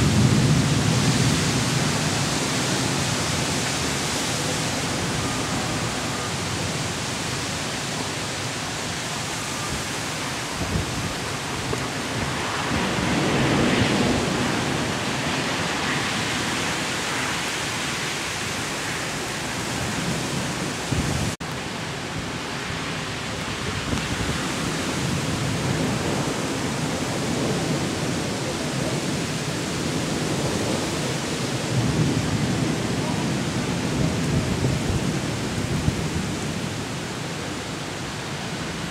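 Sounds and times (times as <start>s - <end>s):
rumble of thunder: 0.0s - 3.7s, 10.6s - 16.7s, 23.8s - 37.0s
heavy rain: 0.0s - 38.9s
storm wind: 0.0s - 38.9s.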